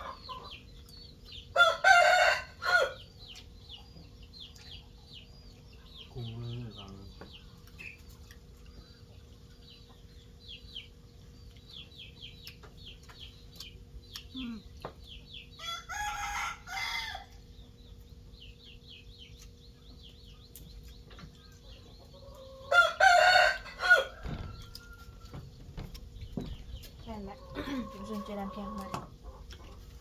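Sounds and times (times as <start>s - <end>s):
small bird chirping: 0.0s - 1.6s, 3.0s - 30.0s
rooster crowing: 1.6s - 3.0s, 15.6s - 17.4s, 22.6s - 25.4s.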